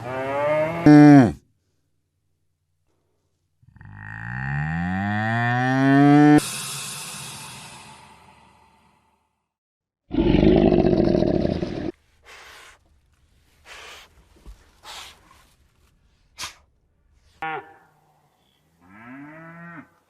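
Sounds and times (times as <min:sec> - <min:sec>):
animal roaring call: 0:10.1 - 0:11.9.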